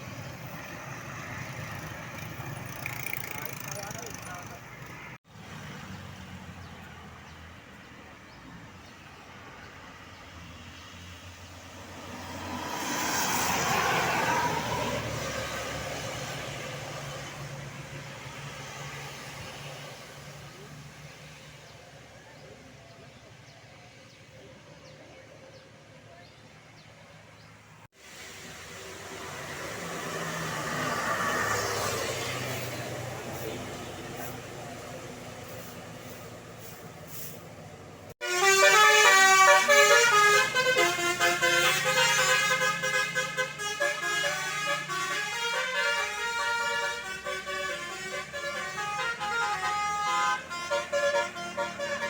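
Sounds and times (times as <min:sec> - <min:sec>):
vehicle approaching: 0:00.0 - 0:38.2
distant traffic hum: 0:00.0 - 0:52.0.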